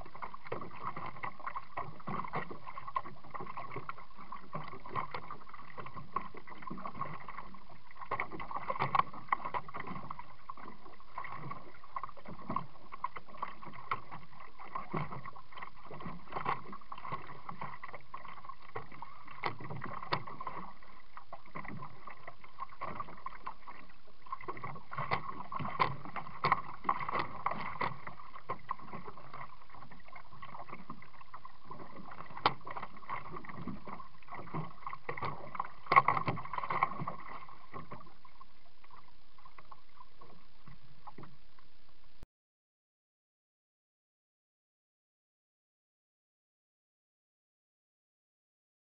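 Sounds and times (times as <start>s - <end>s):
paddle knocking kayak hull: 0.0s - 38.4s
paddle splashing water: 0.0s - 42.2s.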